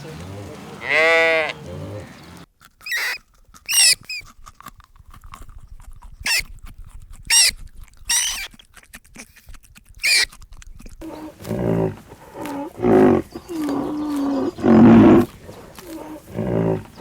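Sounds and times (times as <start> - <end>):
young animal squealing: 2.8 - 4.3, 6.2 - 6.5, 7.3 - 8.6, 10.0 - 10.4, 11.0 - 17.0.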